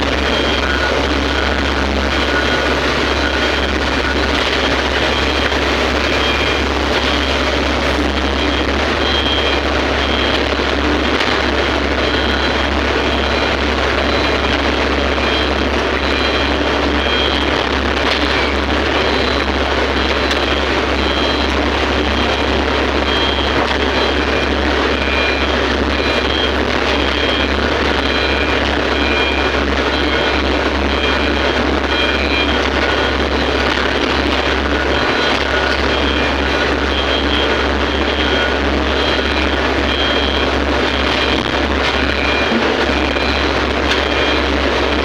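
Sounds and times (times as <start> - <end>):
excavator diesel engine running: 0.0 - 45.0
faint short high-pitched tones: 42.0 - 44.4.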